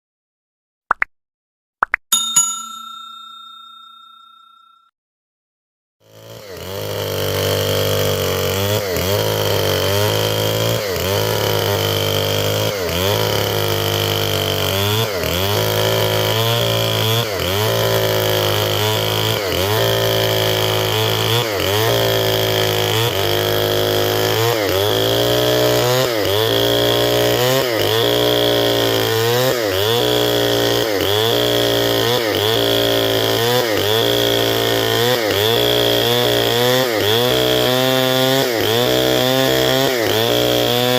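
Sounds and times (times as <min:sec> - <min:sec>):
chainsaw ripping a log: 0:06.0 - 0:40.9.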